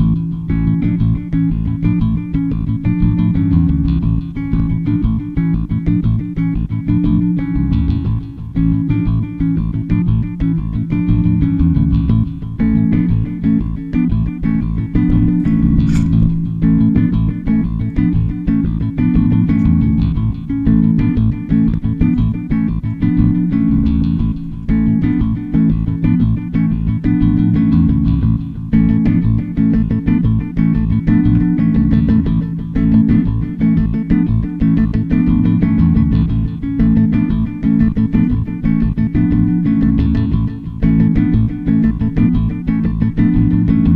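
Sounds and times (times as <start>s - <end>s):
guitar and bass music: 0.0s - 43.9s
sharp click: 15.1s - 16.7s.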